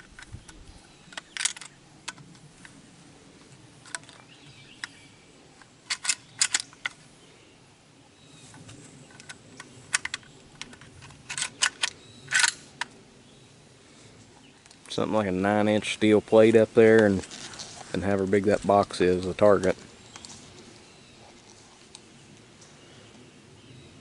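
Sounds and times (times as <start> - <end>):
shotgun lever clicks: 5.9 - 7.0, 9.1 - 13.0.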